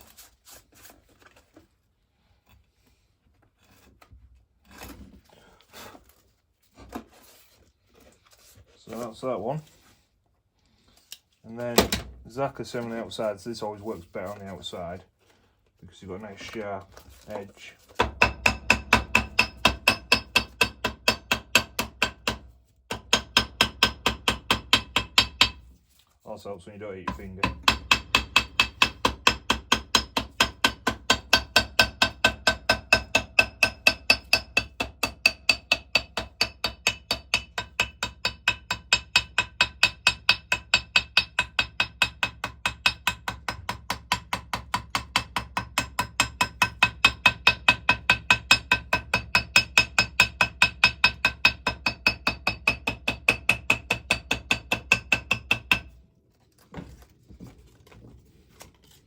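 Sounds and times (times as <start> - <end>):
hammer tapping on metal: 27.1 - 55.9.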